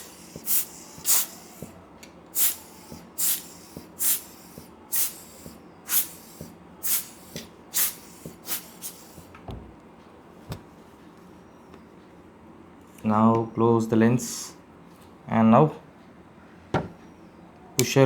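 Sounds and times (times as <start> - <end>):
rubber air blower puffing: 0.0 - 1.8, 2.4 - 9.9
dull thump: 9.4 - 9.9, 16.7 - 17.0.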